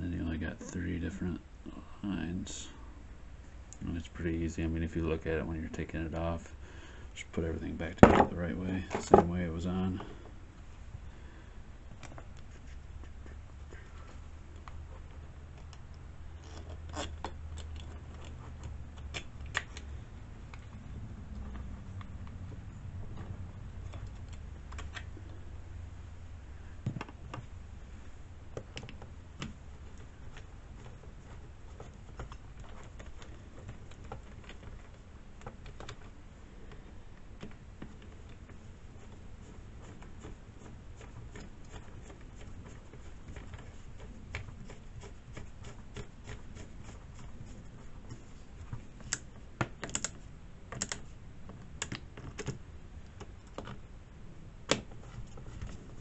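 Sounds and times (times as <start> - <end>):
small parts clicking and tapping: 48.1 - 53.8.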